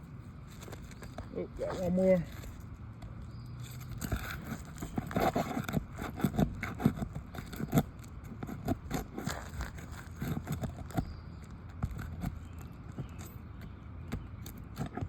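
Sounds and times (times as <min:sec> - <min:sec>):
hand tools scraping shingles: 0:03.6 - 0:13.3.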